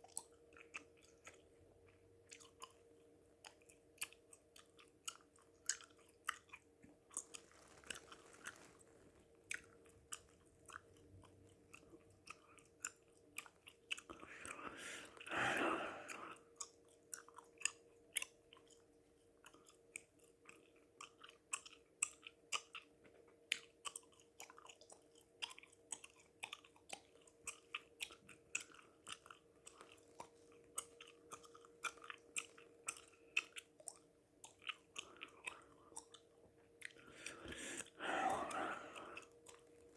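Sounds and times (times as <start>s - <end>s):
wet mouth clicks chewing gum: 0.0s - 8.6s, 9.5s - 39.7s
faint steady hum: 0.0s - 39.9s
long heavy breath: 14.3s - 16.2s, 37.1s - 39.2s.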